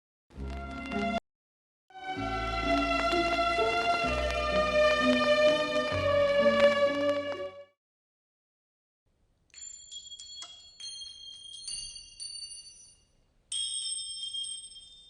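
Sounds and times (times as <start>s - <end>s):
ambient music: 0.4s - 1.2s, 1.9s - 7.8s
high tinkling chimes: 9.5s - 15.0s.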